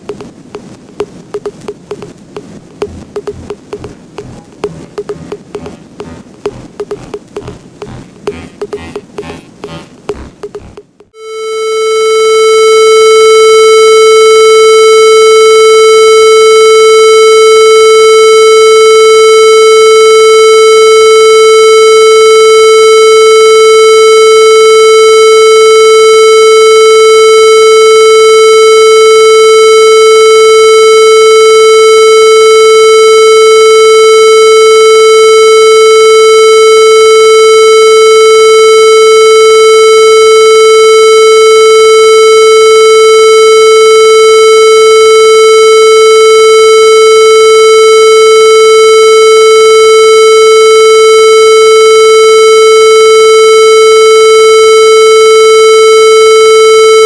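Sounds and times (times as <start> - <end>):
steady electronic tone: 2.8 - 12.7.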